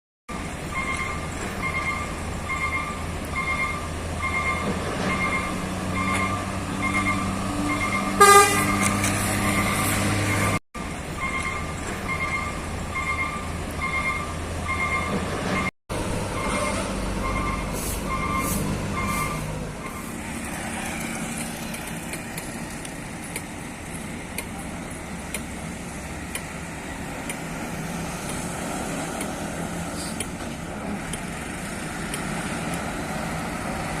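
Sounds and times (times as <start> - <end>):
reversing alarm beeping: 0.3 - 15.7, 16.3 - 20.2
diesel truck engine running: 0.3 - 34.0
truck horn toot: 6.3 - 10.6, 16.3 - 20.1.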